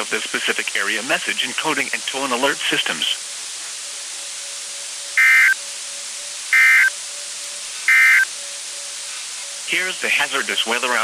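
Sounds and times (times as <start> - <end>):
radio hiss: 0.0 - 11.0
digital data tones: 5.2 - 5.6, 6.5 - 7.0, 7.9 - 8.4.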